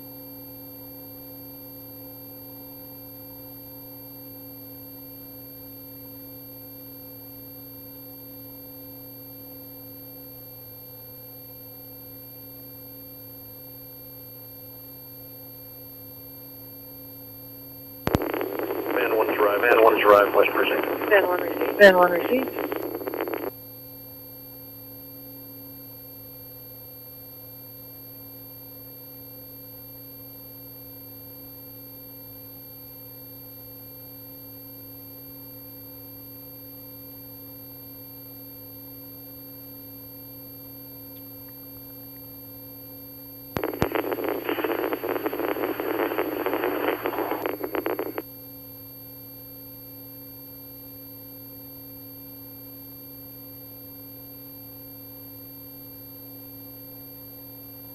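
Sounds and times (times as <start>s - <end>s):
radio scanner tone hum: 18.1s - 23.5s, 43.6s - 48.2s
radio static burst: 18.1s - 23.5s, 43.6s - 48.2s.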